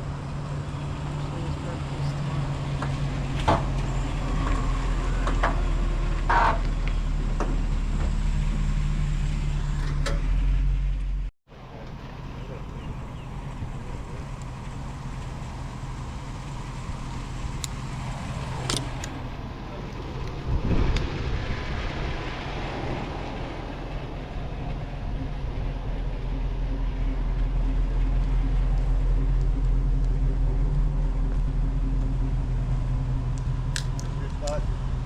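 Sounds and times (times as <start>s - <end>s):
vehicle engine and road noise: 0.0s - 35.0s
vehicle passing whoosh: 16.5s - 35.0s.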